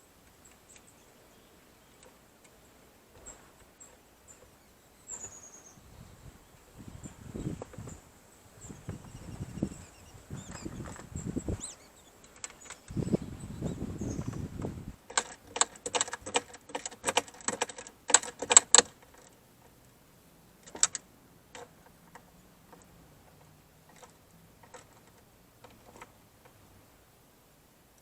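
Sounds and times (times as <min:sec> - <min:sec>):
scattered clicks: 0:12.2 - 0:13.0, 0:14.3 - 0:19.8, 0:20.6 - 0:26.6.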